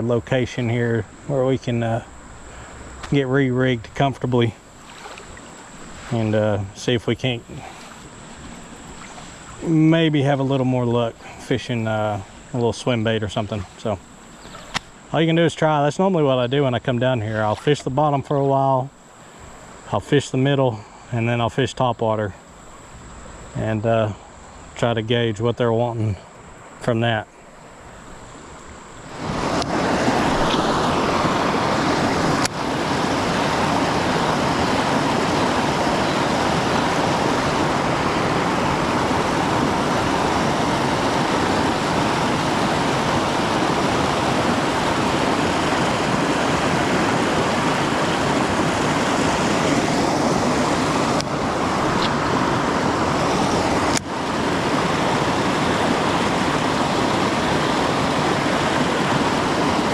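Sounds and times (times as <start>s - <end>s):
creek water rushing over rocks: 3.9s - 15.4s, 29.0s - 59.9s.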